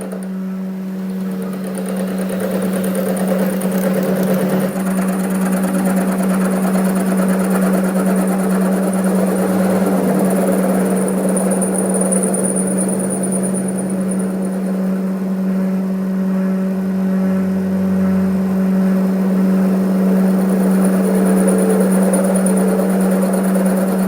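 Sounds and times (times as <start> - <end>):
machine motor humming: 0.0 - 24.0
high whine: 2.2 - 24.0.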